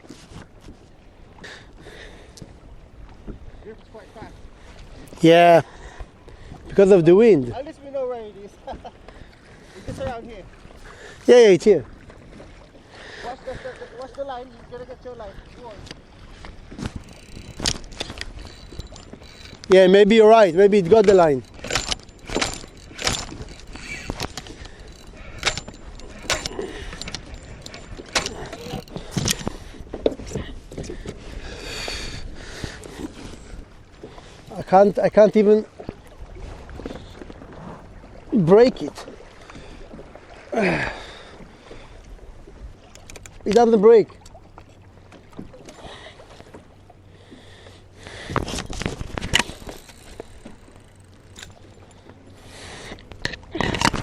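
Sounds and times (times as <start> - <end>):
water noise: 0.0 - 54.0
wind: 0.0 - 54.0
knocks and clicks on kayak: 16.7 - 31.2, 42.9 - 45.8, 48.3 - 51.6.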